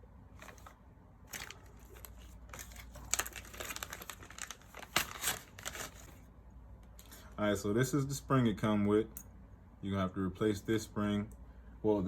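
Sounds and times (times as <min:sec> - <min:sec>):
packaging crinkling and rustling: 0:00.4 - 0:06.3.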